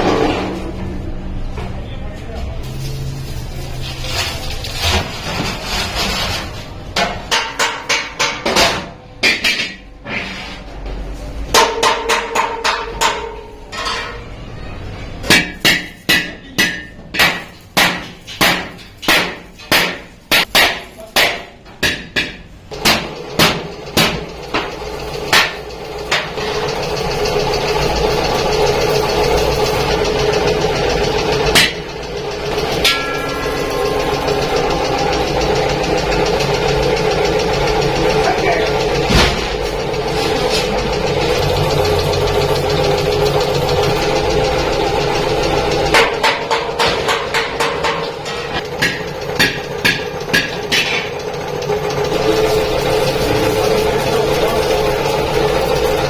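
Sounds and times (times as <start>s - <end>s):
machine running: 0.0s - 7.7s, 22.7s - 56.0s
hammer on sheet iron: 7.0s - 10.3s, 11.5s - 14.1s, 15.2s - 26.5s, 31.5s - 35.9s, 45.9s - 51.2s.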